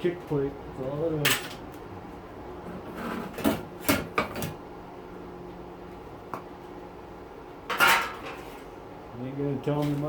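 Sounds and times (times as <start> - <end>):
knocks and clatters of parts: 7.7 - 8.4.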